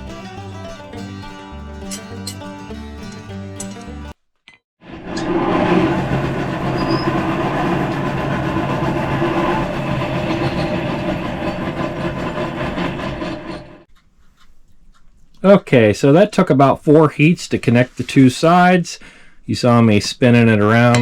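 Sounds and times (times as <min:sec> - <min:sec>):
forge rushing hum: 0:04.8 - 0:13.8.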